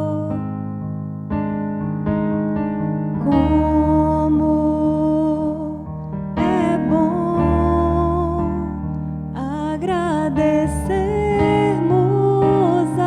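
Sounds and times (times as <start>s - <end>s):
woman singing with vibrato: 0.0s - 0.4s, 3.2s - 8.8s, 9.4s - 13.0s
piano chords: 0.0s - 13.0s.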